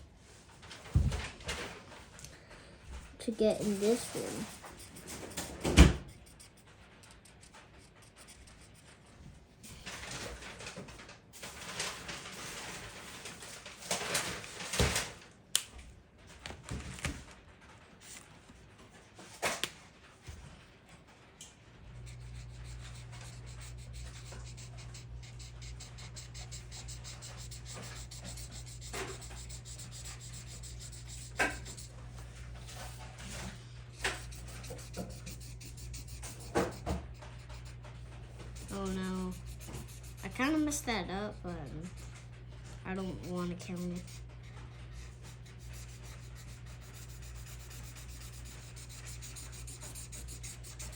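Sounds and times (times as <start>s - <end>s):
drawing tool scratching on paper: 3.3s - 9.0s, 22.0s - 42.3s, 42.9s - 50.9s
low steady hum: 15.2s - 50.9s.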